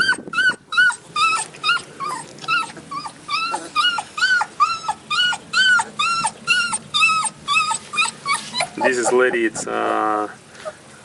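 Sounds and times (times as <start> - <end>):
puppy whining: 0.0 - 10.8.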